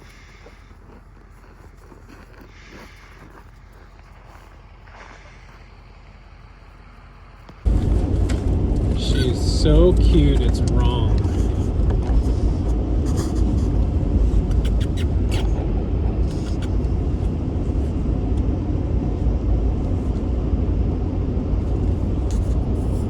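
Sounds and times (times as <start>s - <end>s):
car road rumble inside cabin: 5.8s - 23.0s.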